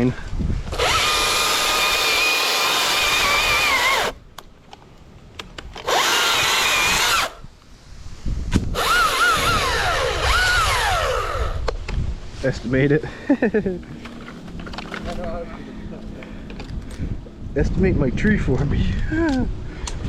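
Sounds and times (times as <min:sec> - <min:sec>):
chainsaw motor whining: 0:00.6 - 0:04.2, 0:05.8 - 0:07.4, 0:08.7 - 0:11.7.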